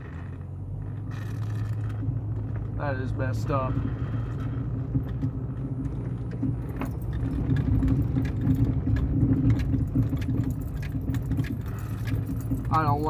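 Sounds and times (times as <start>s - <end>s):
car engine and road hum: 0.0s - 13.0s.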